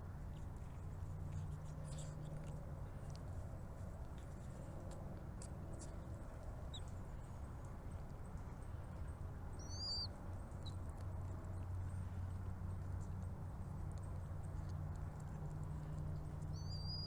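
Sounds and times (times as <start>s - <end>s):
small bird chirping: 1.3s - 2.4s, 9.6s - 10.8s, 16.5s - 17.0s.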